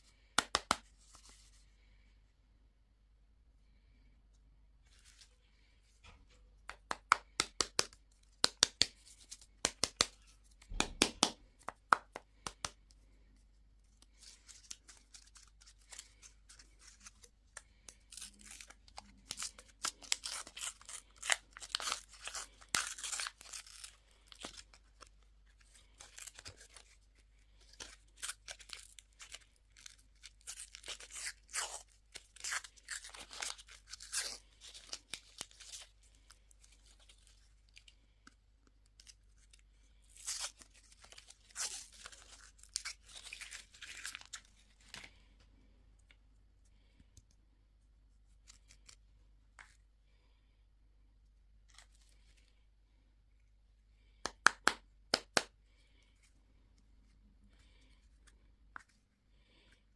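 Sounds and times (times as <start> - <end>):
wrapper crinkling and tearing: 17.8 - 27.0.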